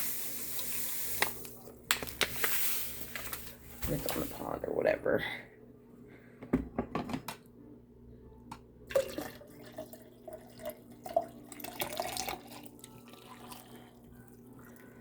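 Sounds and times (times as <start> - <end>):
tea pouring into a cup: 8.9 - 14.9.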